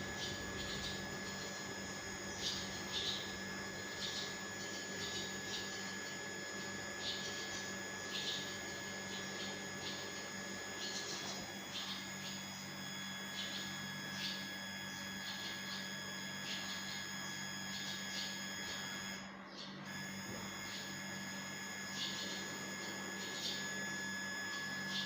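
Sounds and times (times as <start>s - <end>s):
electrical hum with high whine: 0.0s - 25.0s
swallows chirping: 0.0s - 25.0s.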